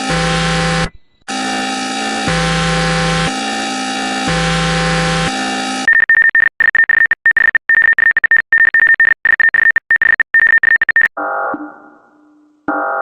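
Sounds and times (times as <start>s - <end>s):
rapidly chopped high beep: 2.2s - 11.1s.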